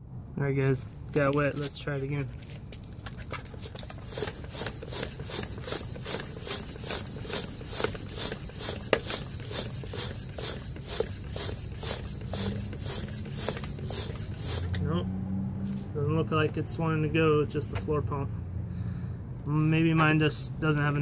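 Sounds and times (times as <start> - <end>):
floor pump air hissing: 3.6 - 14.8.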